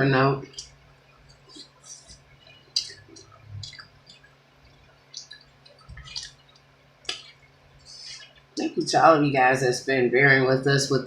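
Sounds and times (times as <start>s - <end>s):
wet mouth smacks and slurps: 1.3s - 7.5s.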